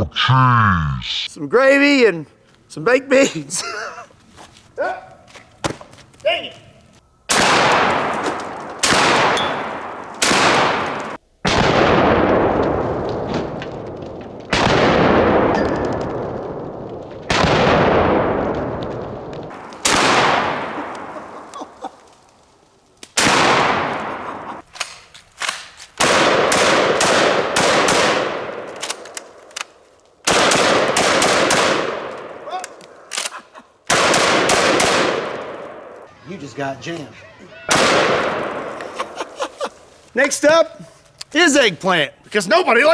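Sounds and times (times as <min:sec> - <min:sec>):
shotgun shots with echo: 0:07.3 - 0:12.5, 0:19.8 - 0:21.1, 0:23.2 - 0:24.4, 0:25.4 - 0:28.7, 0:30.3 - 0:32.4, 0:33.9 - 0:35.9, 0:37.7 - 0:38.8.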